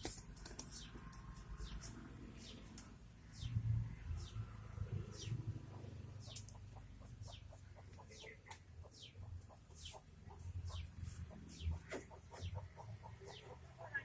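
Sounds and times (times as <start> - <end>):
chickens clucking: 5.2 - 14.0.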